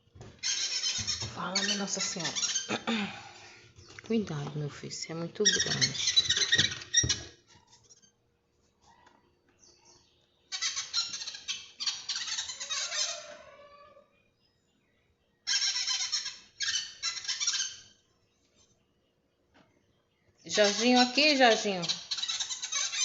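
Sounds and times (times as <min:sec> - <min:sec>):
screeching animal cries: 0:10.5 - 0:14.2, 0:15.5 - 0:18.0.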